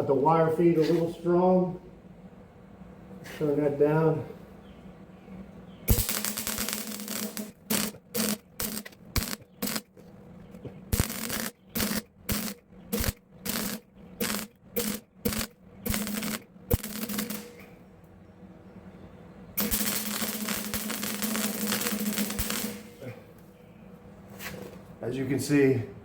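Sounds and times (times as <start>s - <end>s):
welder arc crackling: 5.9s - 17.8s, 19.6s - 23.2s.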